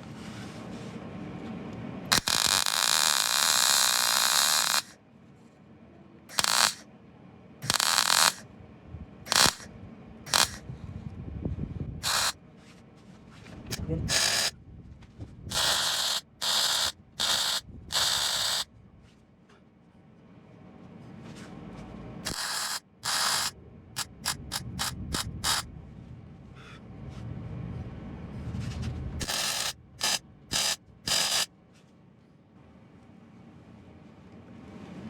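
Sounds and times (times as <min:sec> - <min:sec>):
mig welder bursts: 0:02.1 - 0:05.0, 0:06.3 - 0:06.8, 0:07.6 - 0:08.4, 0:09.3 - 0:09.7, 0:10.3 - 0:10.6, 0:12.0 - 0:12.4, 0:13.7 - 0:14.6, 0:15.5 - 0:18.7, 0:22.2 - 0:25.7, 0:29.2 - 0:31.5.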